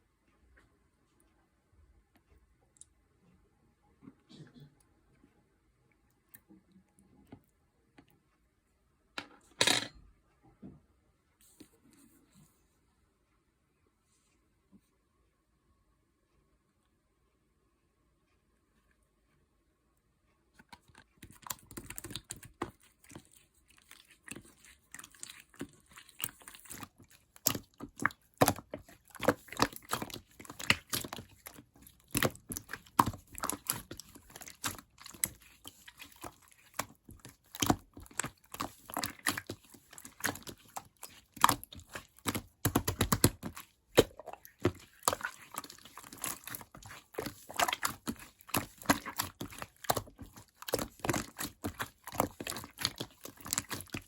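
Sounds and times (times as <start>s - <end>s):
slime clicking and crackling: 20.7s - 54.0s.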